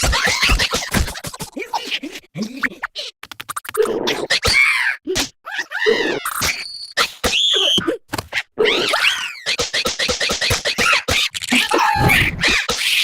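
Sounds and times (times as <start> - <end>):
cartoon clicks and scrapes: 0.0 - 1.6, 3.2 - 4.5, 9.4 - 13.0.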